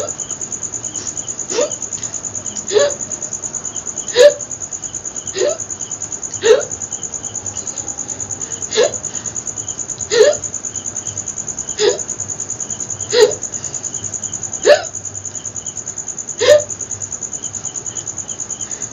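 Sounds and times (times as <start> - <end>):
woman hiccuping: 1.5 - 1.8, 2.7 - 3.2, 4.1 - 4.4, 5.3 - 5.7, 6.4 - 6.8, 8.7 - 9.0, 10.1 - 10.5, 11.8 - 12.1, 13.1 - 13.4, 14.6 - 15.0, 16.4 - 16.7.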